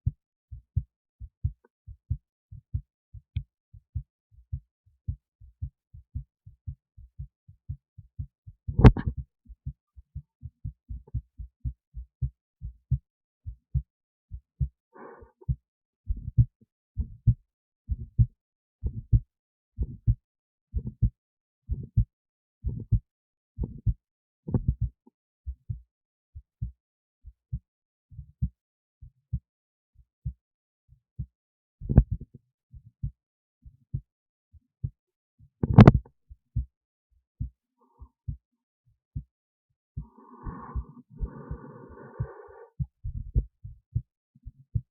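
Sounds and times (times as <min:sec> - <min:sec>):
heartbeat lub-dub thumps: 0:00.0 - 0:09.8, 0:10.4 - 0:14.8, 0:15.4 - 0:25.8, 0:31.2 - 0:32.4, 0:35.6 - 0:36.7, 0:40.0 - 0:44.9.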